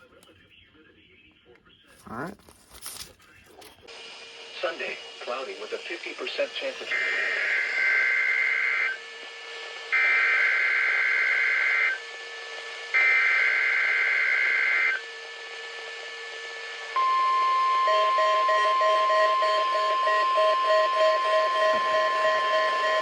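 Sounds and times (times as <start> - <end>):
steady warning alarm tone: 3.9 - 23.0
low beeping: 17.0 - 23.0
screechy digital data bursts: 17.4 - 23.0.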